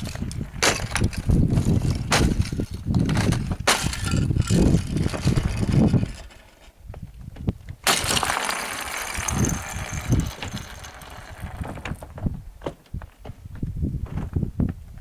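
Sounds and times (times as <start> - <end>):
ice cracking and clinking: 7.9 - 11.7.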